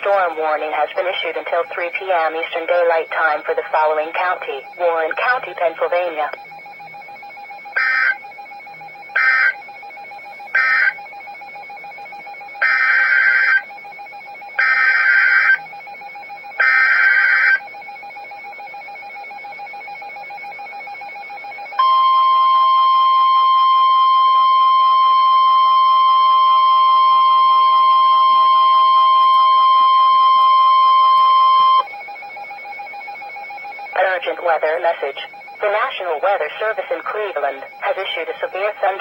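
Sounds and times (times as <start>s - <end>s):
loud steady attention tone: 0.0s - 39.0s
electronic data bursts: 7.7s - 8.2s.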